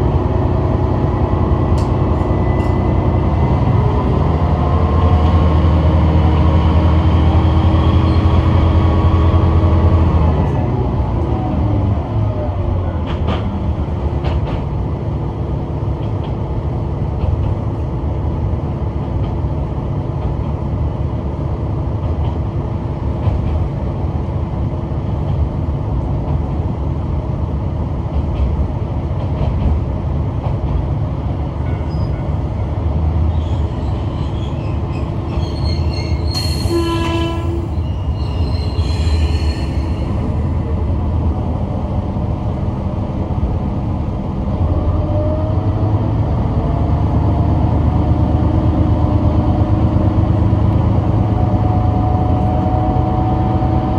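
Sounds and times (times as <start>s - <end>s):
diesel railcar rumbling on track: 0.0s - 53.9s
wheels squealing: 33.3s - 40.9s
short train horn blast: 35.4s - 40.4s.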